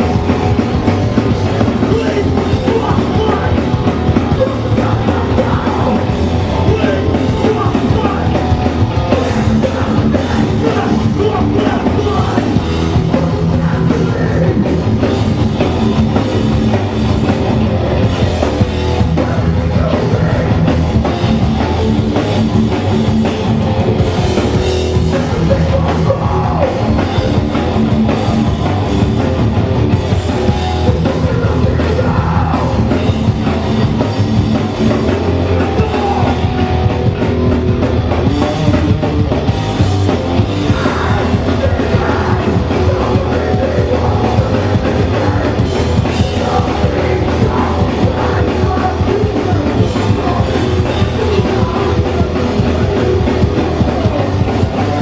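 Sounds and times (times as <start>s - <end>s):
bass guitar: 0.0s - 55.0s
distorted electric guitars: 0.0s - 55.0s
drum kit: 0.0s - 55.0s
shouted vocals: 1.6s - 15.2s, 30.9s - 33.1s, 34.8s - 36.8s, 40.6s - 55.0s.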